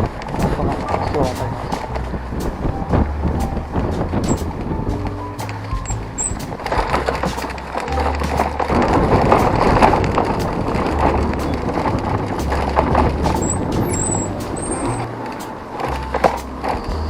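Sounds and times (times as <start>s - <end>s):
background music bass line: 0.0s - 17.0s
road traffic passing: 0.0s - 17.0s.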